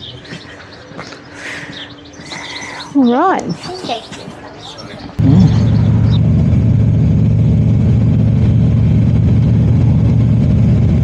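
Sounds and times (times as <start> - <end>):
motorcycle engine running: 5.2 - 11.0.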